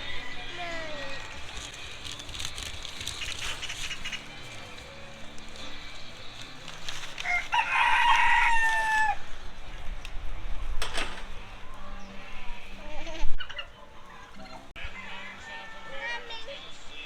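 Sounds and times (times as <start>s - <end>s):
rooster crowing: 7.2s - 9.3s, 14.8s - 16.6s.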